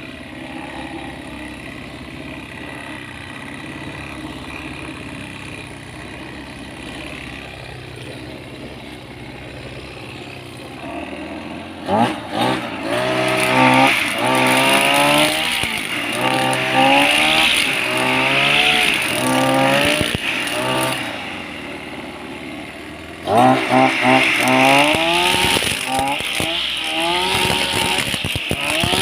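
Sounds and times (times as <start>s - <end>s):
brush cutter revving: 0.0s - 29.0s.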